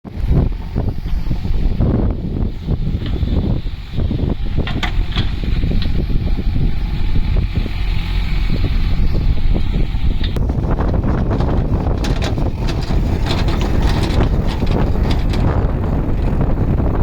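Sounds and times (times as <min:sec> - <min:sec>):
diesel engine running: 0:00.1 - 0:17.0
wind buffeting microphone: 0:00.1 - 0:17.0.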